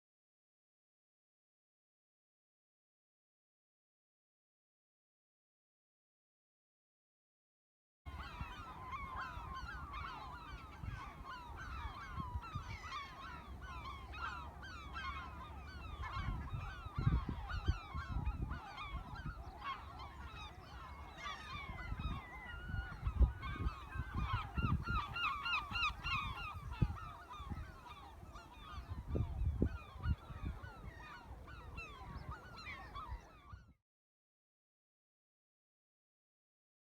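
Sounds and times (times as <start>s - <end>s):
flock of gulls calling: 8.1s - 33.8s.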